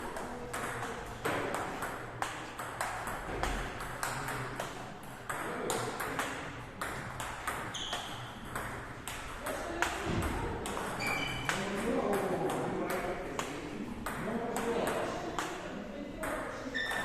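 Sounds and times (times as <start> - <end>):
table tennis balls clicking: 0.0 - 15.6.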